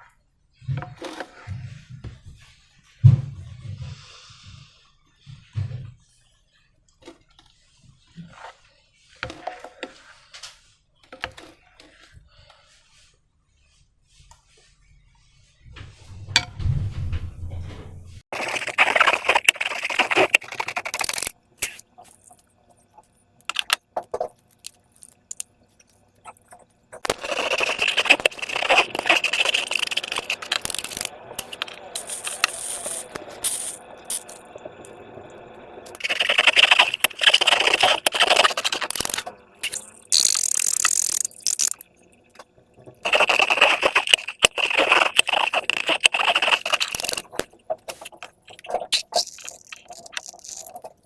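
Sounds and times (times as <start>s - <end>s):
slime materials scraping and rattling: 18.2s - 34.4s, 35.9s - 41.9s, 43.0s - 51.0s.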